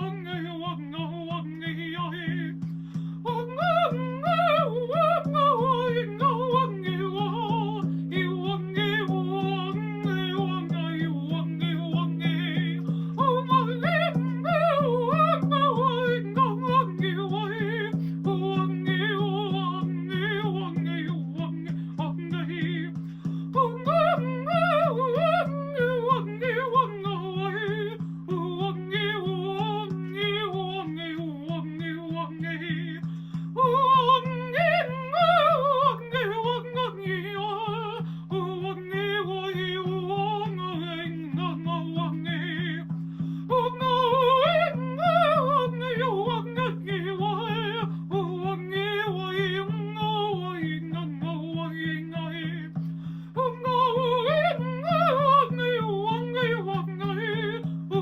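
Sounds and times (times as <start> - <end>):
woman singing wordlessly: 0.0 - 58.0.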